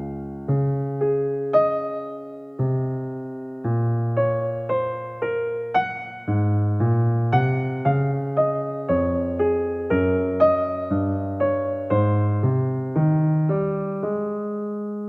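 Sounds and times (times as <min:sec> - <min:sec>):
electric piano playing: 0:00.0 - 0:15.0.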